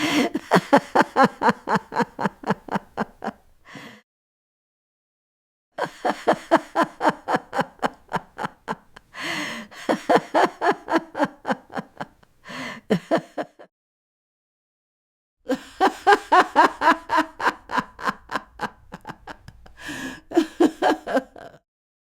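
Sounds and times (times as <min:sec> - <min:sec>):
gasping in-breaths: 0:00.0 - 0:00.6, 0:03.6 - 0:04.0, 0:09.1 - 0:10.0, 0:12.4 - 0:13.0, 0:19.8 - 0:20.4
old woman laughing: 0:00.0 - 0:03.4, 0:05.8 - 0:12.2, 0:12.9 - 0:13.7, 0:15.5 - 0:21.6.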